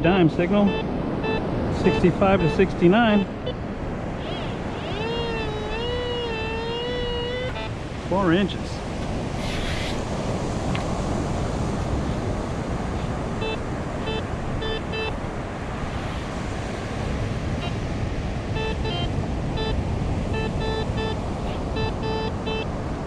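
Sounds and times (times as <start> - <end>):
electronic probe beeping: 0.0 - 7.8, 13.4 - 15.2, 18.5 - 22.7
surf: 0.0 - 23.0
wind: 0.0 - 23.0.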